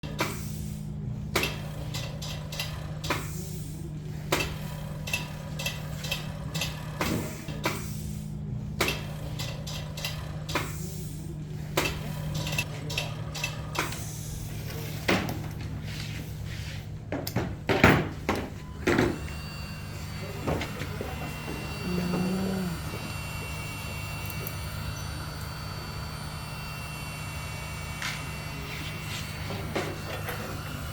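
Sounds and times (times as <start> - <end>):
vacuum pump humming: 19.0 - 30.9.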